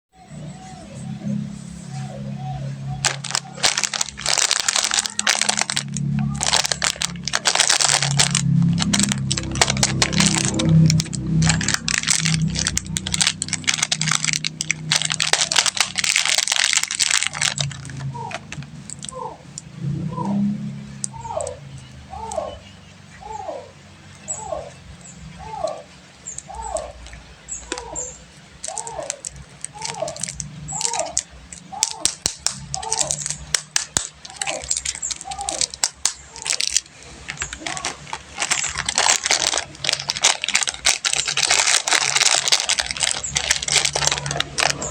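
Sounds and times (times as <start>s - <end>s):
low steady drone: 0.2s - 30.7s
plastic wrappers crinkling: 2.4s - 22.6s, 23.2s - 44.9s.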